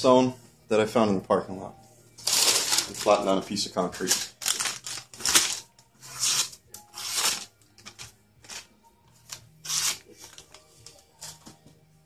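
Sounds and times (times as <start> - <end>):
knife blade scraping: 6.0 - 7.5, 9.6 - 10.0.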